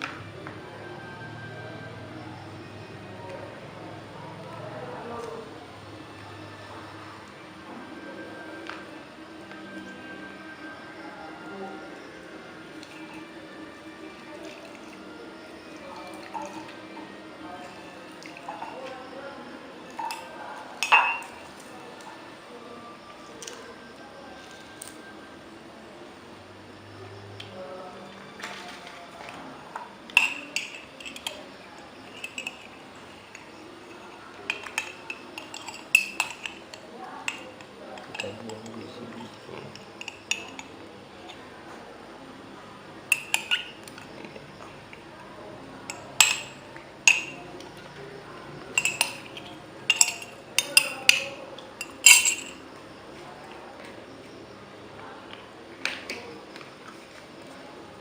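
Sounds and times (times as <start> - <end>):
metal utensil clinking on dish: 19.9 - 21.5, 30.1 - 31.4, 32.0 - 40.7, 43.1 - 44.1, 45.9 - 47.4, 48.7 - 52.6.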